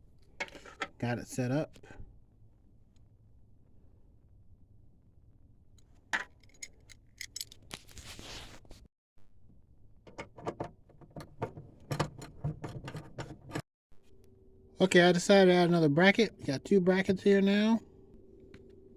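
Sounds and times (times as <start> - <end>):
small metal parts clinking: 6.3 - 7.8.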